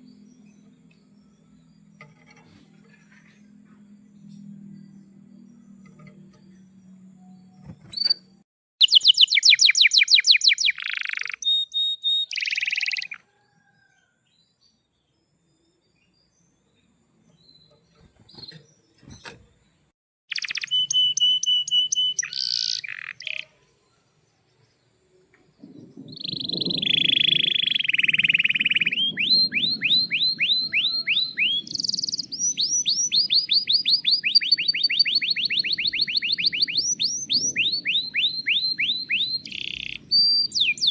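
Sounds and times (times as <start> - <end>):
canary singing trills: 0.0 - 13.2, 20.3 - 23.6, 26.0 - 40.9.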